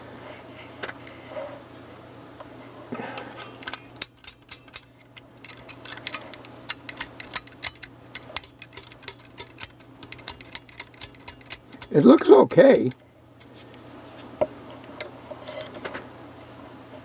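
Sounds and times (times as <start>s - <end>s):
metal tool scraping battery contacts: 3.6s - 13.0s.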